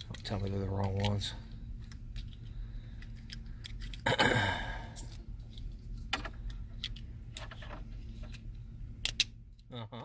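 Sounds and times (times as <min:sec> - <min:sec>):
person sighing: 0:04.0 - 0:05.0.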